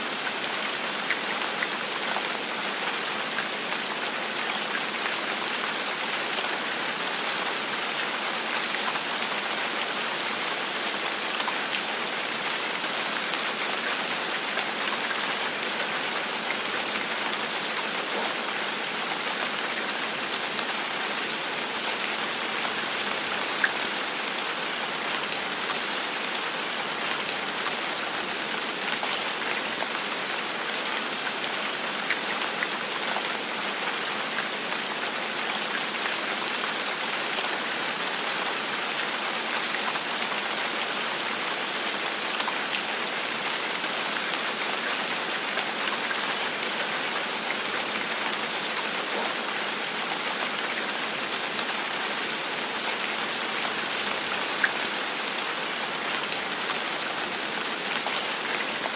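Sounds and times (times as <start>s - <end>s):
gentle rain falling: 0.0s - 58.9s.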